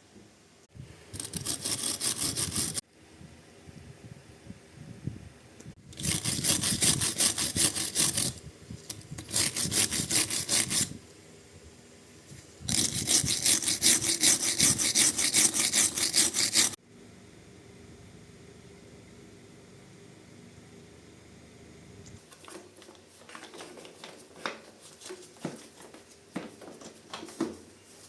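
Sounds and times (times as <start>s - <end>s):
hand tool sawing strokes: 1.2s - 2.8s, 6.0s - 8.4s, 9.2s - 11.0s, 12.7s - 16.8s.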